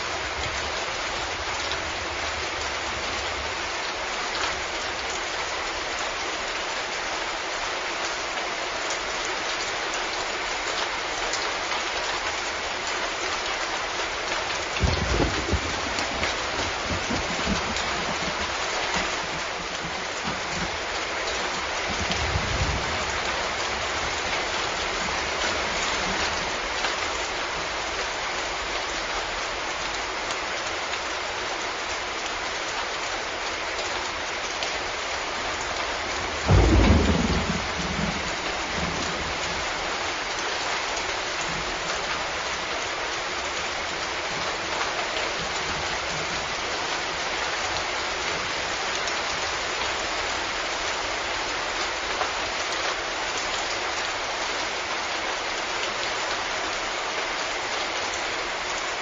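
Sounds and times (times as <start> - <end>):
steady rain: 0.0 - 59.0
thunderclap rumbling: 14.7 - 20.9, 21.5 - 26.6, 36.2 - 39.7.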